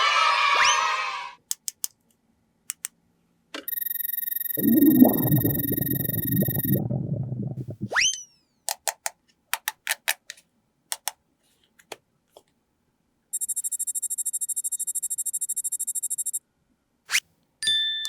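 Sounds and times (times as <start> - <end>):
sharp clicks: 1.5 - 2.1, 2.7 - 3.0, 8.7 - 11.2
electronic ringing: 3.7 - 7.5, 13.4 - 16.4
rising swoop: 4.6 - 8.1.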